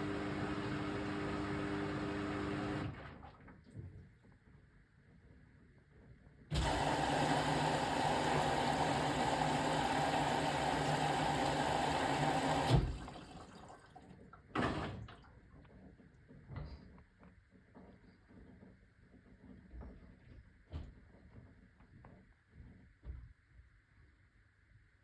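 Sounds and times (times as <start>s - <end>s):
water rushing into washing machine: 0.0s - 3.6s, 6.5s - 15.4s.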